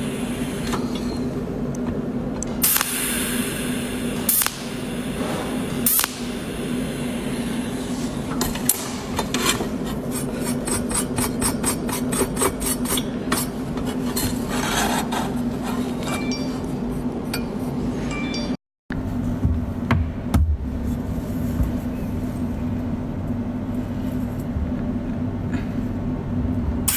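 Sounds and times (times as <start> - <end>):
welding machine hum: 2.4 - 14.5, 20.7 - 26.9
welding machine ticking: 2.6 - 3.2, 4.3 - 4.8, 5.9 - 6.4.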